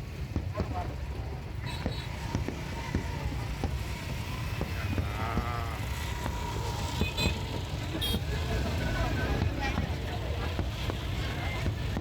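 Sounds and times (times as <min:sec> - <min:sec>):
fireworks crackling pops: 0:00.0 - 0:07.8, 0:09.0 - 0:12.0
crowd hubbub: 0:00.0 - 0:12.0.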